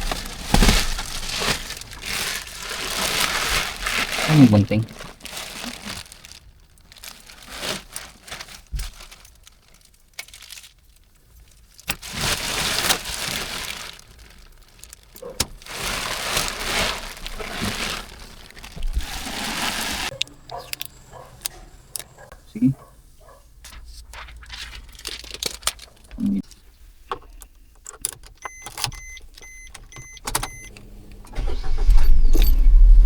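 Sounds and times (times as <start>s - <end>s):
plastic wrapping crumpling and tearing: 0.0s - 20.4s, 23.6s - 26.7s.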